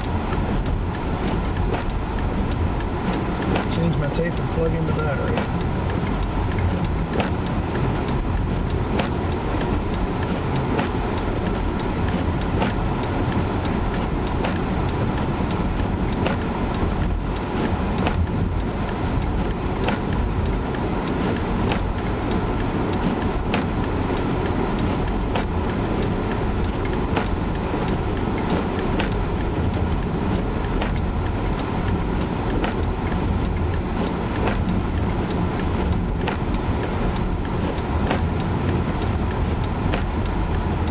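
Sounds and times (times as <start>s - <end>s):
car cabin road and engine noise: 0.0s - 40.9s
light clicking: 15.5s - 40.9s.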